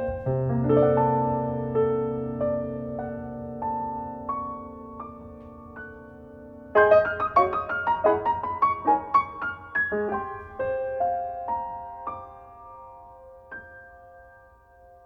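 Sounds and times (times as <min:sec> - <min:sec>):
piano music: 0:00.0 - 0:15.0.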